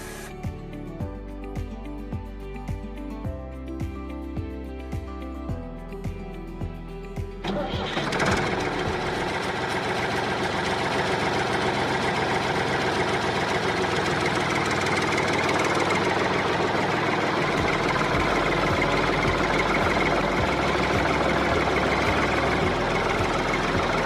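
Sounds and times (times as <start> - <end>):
small engine idling: 0.0 - 0.4, 7.4 - 24.0.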